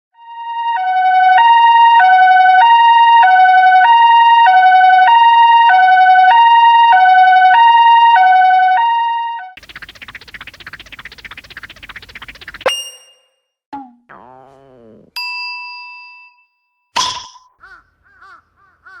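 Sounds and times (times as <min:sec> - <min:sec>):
two-tone ambulance siren: 0:00.2 - 0:09.6.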